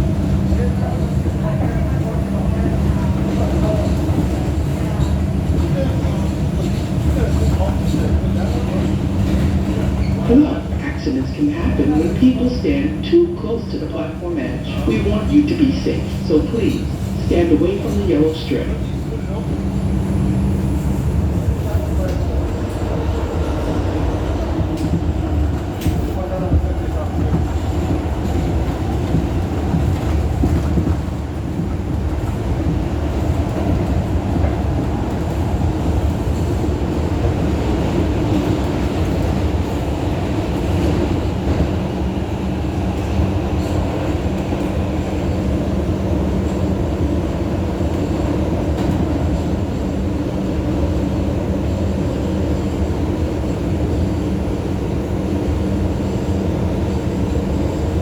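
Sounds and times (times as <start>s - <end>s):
subway car running on rails: 0.0s - 58.0s.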